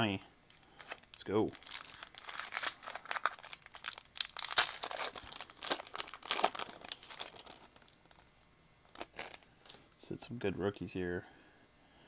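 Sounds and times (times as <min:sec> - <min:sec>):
wrapper tearing and crinkling: 0:00.5 - 0:08.2, 0:08.9 - 0:09.8.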